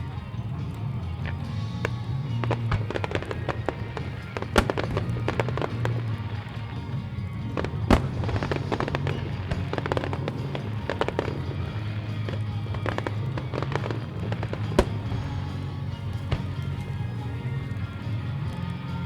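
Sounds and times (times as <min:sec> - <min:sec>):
fireworks bursting and crackling: 0:00.0 - 0:19.0
music over loudspeakers: 0:00.0 - 0:19.0.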